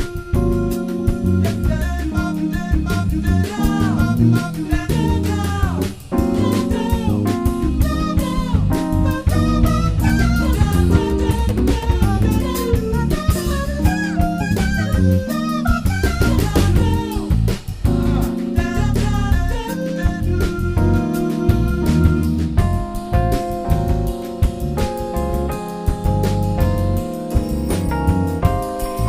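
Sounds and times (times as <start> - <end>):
jazz-funk band playing: 0.0 - 29.0.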